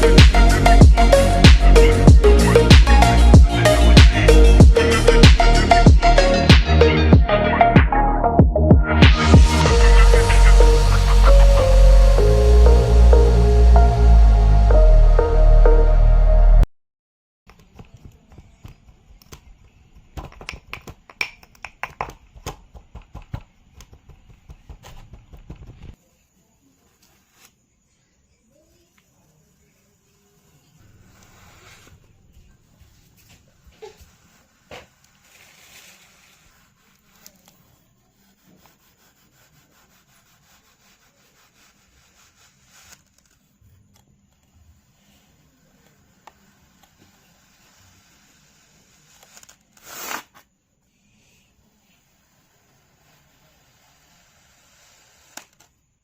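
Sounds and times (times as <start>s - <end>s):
tool scraping sand: 30.2s - 32.1s, 32.9s - 43.6s, 44.4s - 50.5s, 51.5s - 55.7s.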